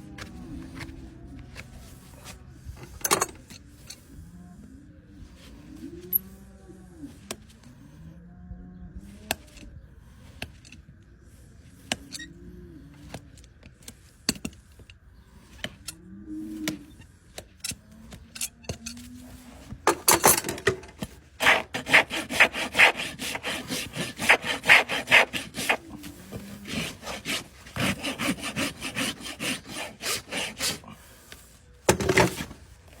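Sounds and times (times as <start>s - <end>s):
rasp filing hoof: 16.6s - 32.7s.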